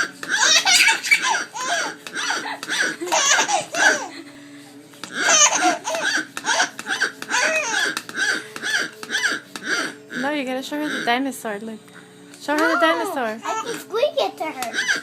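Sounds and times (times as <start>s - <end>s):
baby laughing: 0.0s - 4.2s, 5.1s - 9.9s, 12.6s - 15.0s.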